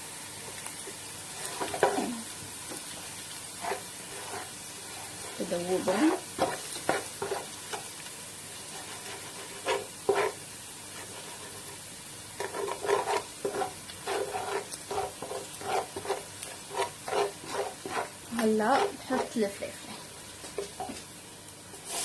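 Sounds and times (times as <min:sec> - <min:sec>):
onions sizzling in oil: 0:00.0 - 0:22.0
spoon stirring in pot: 0:01.4 - 0:02.1, 0:03.6 - 0:05.4, 0:06.1 - 0:07.9, 0:08.7 - 0:10.4, 0:12.4 - 0:19.4.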